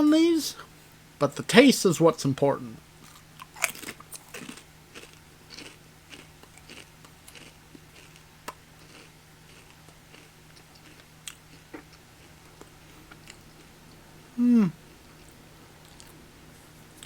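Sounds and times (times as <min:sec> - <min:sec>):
faint low hum: 0:00.0 - 0:17.0
person chewing crisps: 0:03.0 - 0:16.2.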